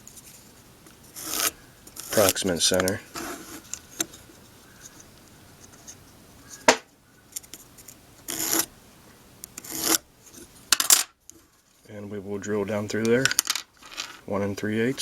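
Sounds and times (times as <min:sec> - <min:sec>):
pencil scratching on wood: 0:01.2 - 0:02.2, 0:08.3 - 0:08.7, 0:09.6 - 0:10.0.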